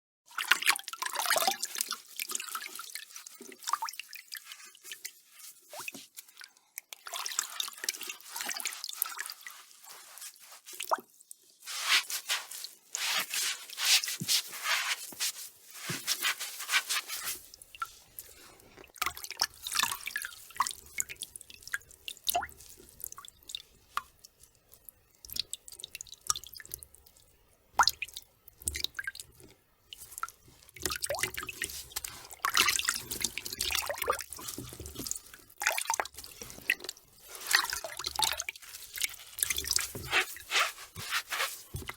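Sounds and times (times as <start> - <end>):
water dripping: 0.4 - 11.4, 17.5 - 40.4
wet sponge scrubbing: 1.4 - 6.4, 7.2 - 18.6, 31.3 - 35.2, 36.2 - 41.9.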